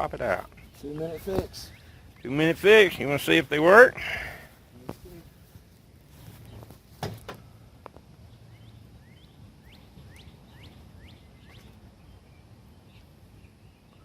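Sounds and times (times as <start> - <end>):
bird chirping: 0.4 - 3.5, 7.4 - 14.0.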